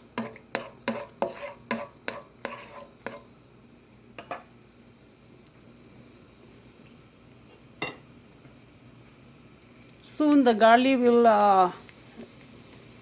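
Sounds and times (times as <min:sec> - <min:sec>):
spatula scraping pan: 0:00.0 - 0:03.4
oil sizzling: 0:00.0 - 0:13.0.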